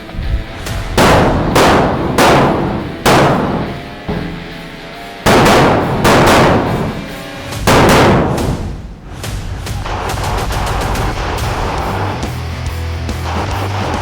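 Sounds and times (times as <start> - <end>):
pistol shots: 0.6 - 9.3.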